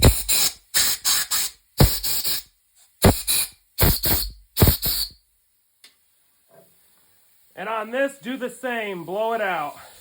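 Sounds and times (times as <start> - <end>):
compressed air blowgun hissing blasts: 0.0 - 5.2.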